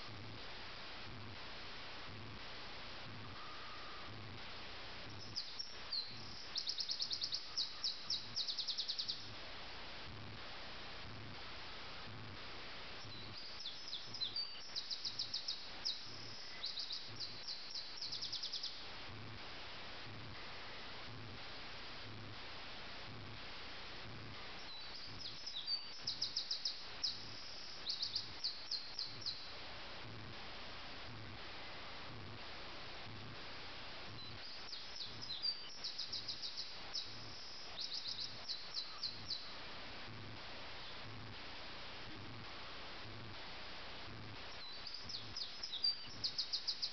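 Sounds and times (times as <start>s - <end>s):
background hiss: 0.0s - 46.9s
nightingale singing: 5.1s - 9.4s, 13.0s - 18.8s, 24.6s - 29.5s, 34.2s - 39.6s, 44.6s - 46.9s.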